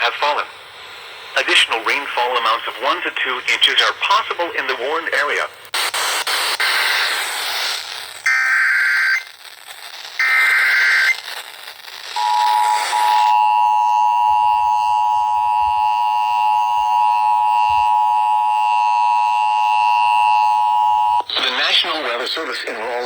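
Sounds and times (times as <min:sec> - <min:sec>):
warbling digital data tones: 0:12.1 - 0:21.7
two-tone attention signal: 0:12.2 - 0:21.2.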